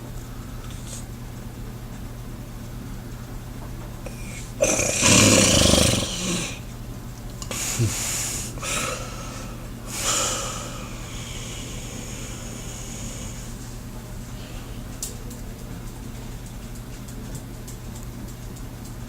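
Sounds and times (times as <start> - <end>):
person snoring: 4.1 - 6.6
faint breaths: 7.5 - 15.2.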